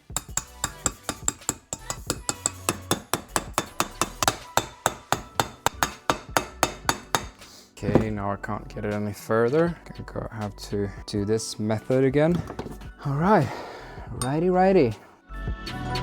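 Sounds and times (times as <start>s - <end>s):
hammer tapping metal: 0.0s - 8.2s.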